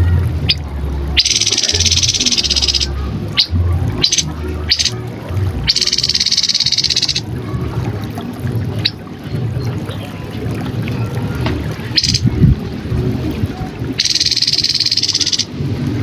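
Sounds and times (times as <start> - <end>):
bird calling sharp high notes: 1.2 - 5.0, 5.6 - 7.2, 11.9 - 12.3, 14.0 - 15.5
low rumble: 1.8 - 5.8, 10.4 - 14.0.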